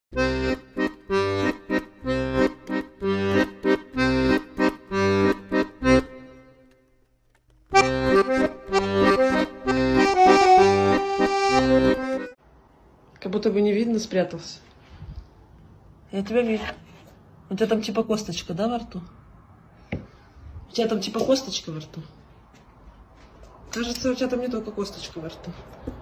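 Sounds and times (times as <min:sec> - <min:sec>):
accordion music: 0:00.1 - 0:06.9, 0:07.6 - 0:12.4.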